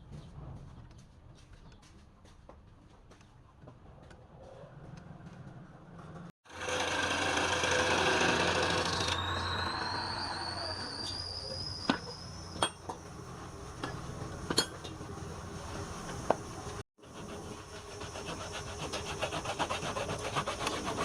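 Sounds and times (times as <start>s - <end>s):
lathe tool scraping spinning wood: 6.5s - 12.6s, 17.0s - 21.0s
thin rising whine: 6.6s - 14.5s.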